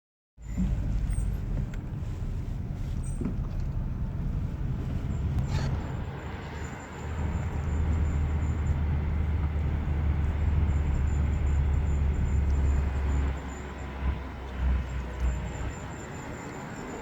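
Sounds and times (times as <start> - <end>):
low engine rumble: 0.4 - 17.0
car squealing: 4.4 - 17.0.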